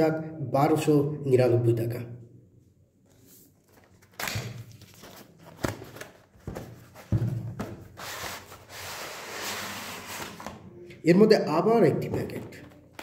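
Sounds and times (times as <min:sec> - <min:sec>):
packaging rustling and sliding: 0:03.2 - 0:10.6
knocks on cardboard box: 0:07.0 - 0:07.8.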